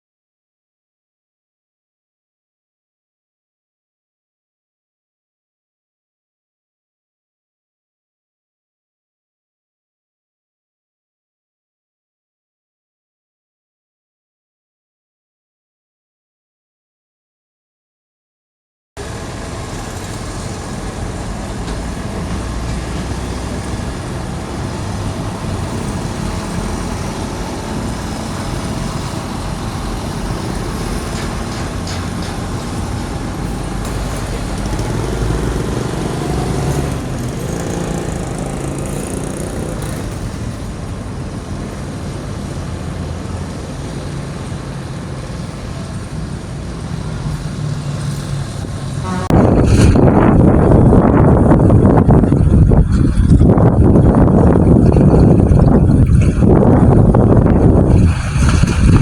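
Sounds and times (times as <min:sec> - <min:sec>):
road traffic: 0:19.0 - 0:59.0
vehicle engine passing: 0:19.0 - 0:59.0.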